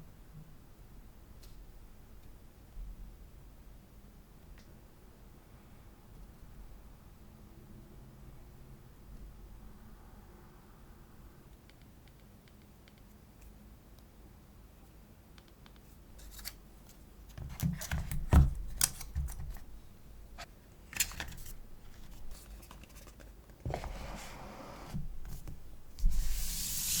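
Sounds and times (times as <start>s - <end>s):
rustling rubbing noise: 21.8s - 27.0s.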